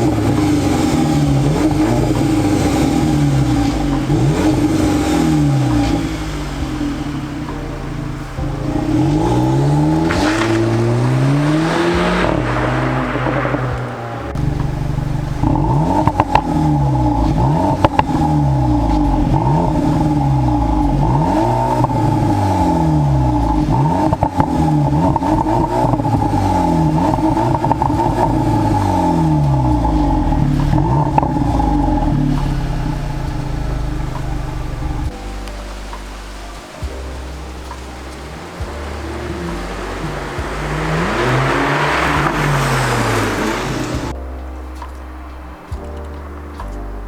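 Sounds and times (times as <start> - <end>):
car engine droning: 0.0 - 47.0.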